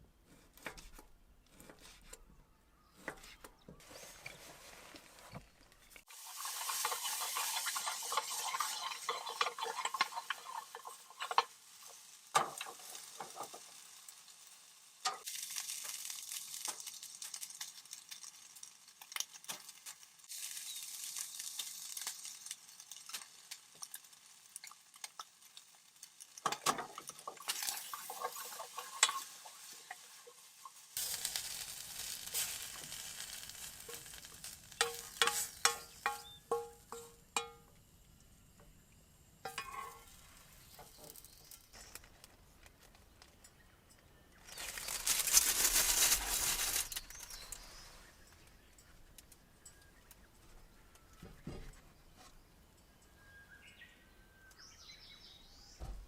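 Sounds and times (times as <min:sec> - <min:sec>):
hiss: 0:06.0 - 0:13.6, 0:27.6 - 0:36.0
metal utensils clinking on pans: 0:06.2 - 0:11.6, 0:15.0 - 0:15.3, 0:21.5 - 0:30.8, 0:34.8 - 0:37.8, 0:39.4 - 0:41.3.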